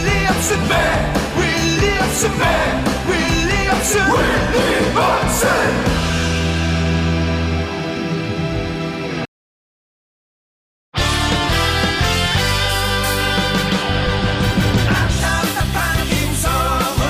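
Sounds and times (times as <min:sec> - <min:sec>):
voices singing a chant: 0:00.0 - 0:06.1, 0:14.9 - 0:17.0
drums: 0:00.0 - 0:09.2, 0:11.0 - 0:17.0
bass: 0:00.0 - 0:09.3, 0:11.0 - 0:17.0.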